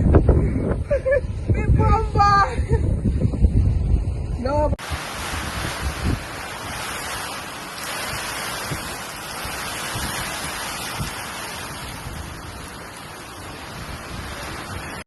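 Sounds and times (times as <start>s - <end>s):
wind and heavy rain: 0.0s - 15.0s
wind buffeting microphone: 0.0s - 15.0s.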